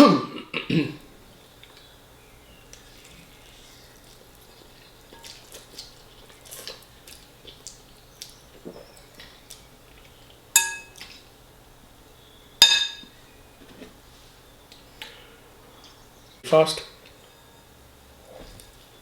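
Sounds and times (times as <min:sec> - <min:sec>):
soft eating noises: 0:00.5 - 0:19.0
fork striking a plate: 0:10.6 - 0:11.0, 0:12.6 - 0:13.1.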